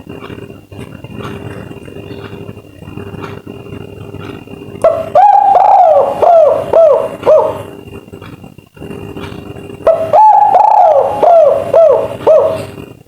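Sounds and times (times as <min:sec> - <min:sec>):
dove cooing: 0:00.0 - 0:13.0
steady background hum: 0:00.0 - 0:13.0.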